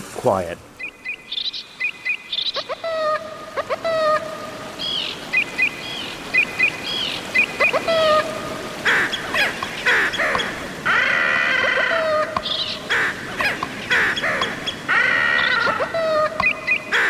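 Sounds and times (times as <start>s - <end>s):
underwater background hiss: 0.0s - 1.8s
marine animals whistling and chirping: 0.8s - 8.3s, 14.4s - 17.0s.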